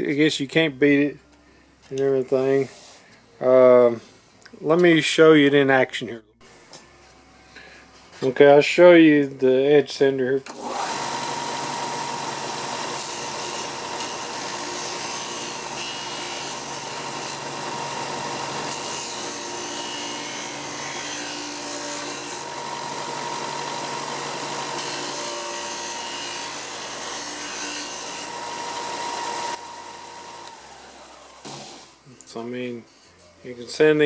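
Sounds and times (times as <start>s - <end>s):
bench sander sanding wood: 10.7s - 31.9s.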